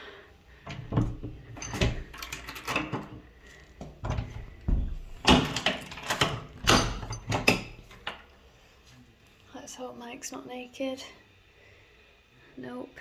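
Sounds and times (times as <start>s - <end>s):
knocks bumps and rustling clatter: 0.7s - 8.2s.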